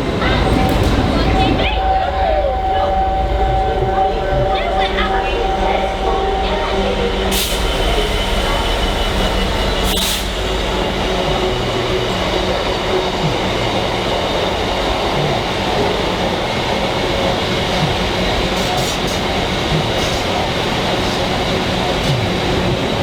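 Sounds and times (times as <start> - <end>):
train running on rails: 0.0 - 23.0.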